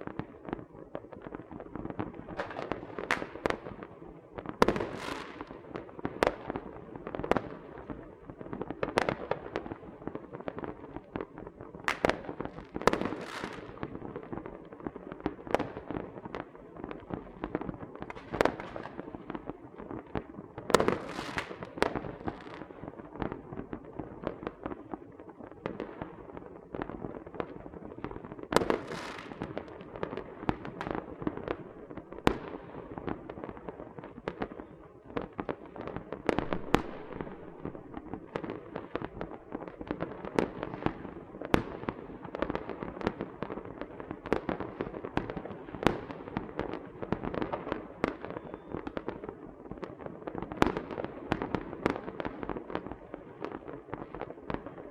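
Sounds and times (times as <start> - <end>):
firecrackers banging and popping: 2.1 - 3.8, 11.8 - 14.1, 28.0 - 41.8
fireworks crackling: 11.6 - 14.6, 26.9 - 41.4.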